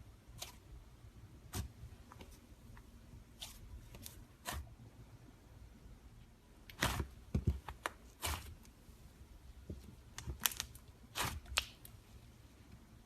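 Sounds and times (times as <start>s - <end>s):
slime squelching by hand: 9.9s - 12.2s.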